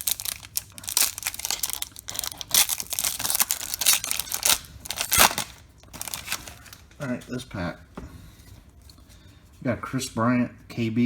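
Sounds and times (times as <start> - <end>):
foil wrapper crinkling and tearing: 0.0 - 7.1.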